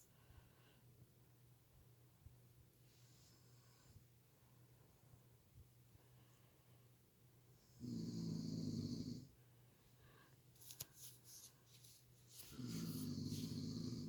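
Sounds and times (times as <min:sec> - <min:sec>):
soft breathing noises: 0:00.0 - 0:01.2, 0:02.7 - 0:08.0, 0:09.1 - 0:14.0
person snoring: 0:12.5 - 0:14.0.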